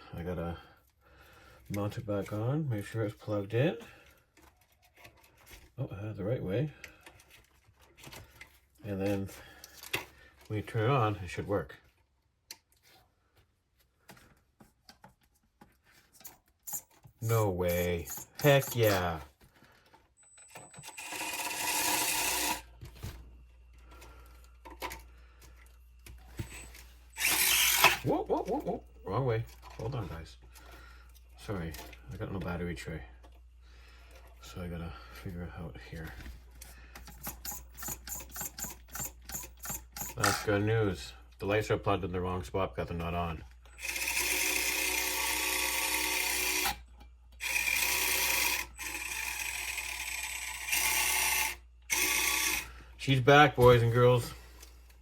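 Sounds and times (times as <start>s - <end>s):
electric motor and gears whirring: 16.1s - 19.4s, 20.2s - 30.4s, 37.0s - 40.7s, 43.7s - 55.0s.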